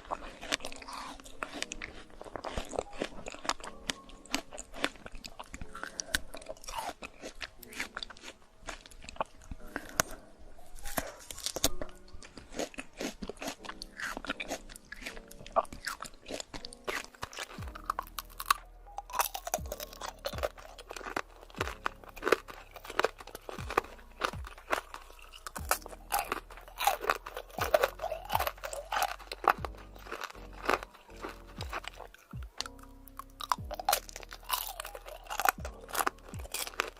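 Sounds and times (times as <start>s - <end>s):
crunching and chewing fruit: 0.0s - 36.9s
background music with low beat: 13.6s - 36.9s.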